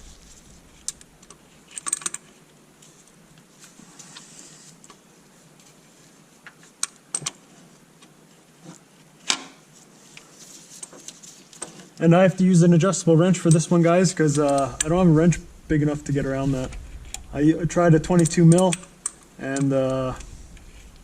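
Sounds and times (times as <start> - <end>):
hand tools clicking and tapping: 18.1 - 20.3.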